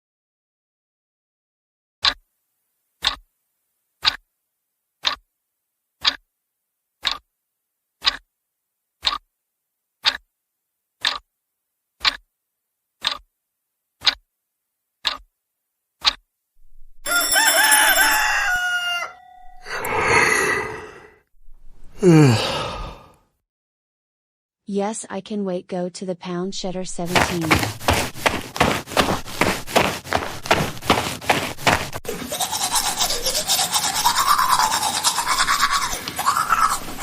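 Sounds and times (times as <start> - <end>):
clock ticking: 3.0 - 3.2, 5.0 - 5.2, 7.0 - 7.2, 8.0 - 8.2, 9.0 - 9.2, 10.0 - 10.2, 11.0 - 11.2, 12.0 - 12.2, 13.0 - 13.2, 14.0 - 14.2, 15.0 - 15.2, 27.0 - 32.0
rooster crowing: 17.0 - 19.6.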